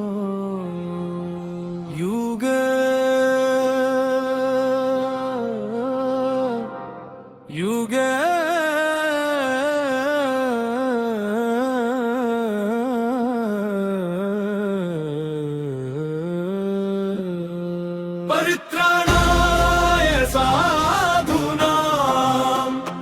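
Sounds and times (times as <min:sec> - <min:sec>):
voice chanting long note: 0:00.0 - 0:03.2, 0:16.0 - 0:23.0
backing track with heavy bass: 0:19.1 - 0:23.0
sudden hit: 0:19.1 - 0:23.0.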